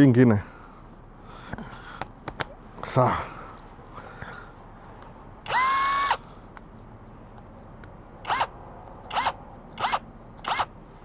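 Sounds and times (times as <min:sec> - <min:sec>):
cordless power tool motor whining: 0:05.5 - 0:06.2, 0:08.2 - 0:08.5, 0:09.1 - 0:10.7.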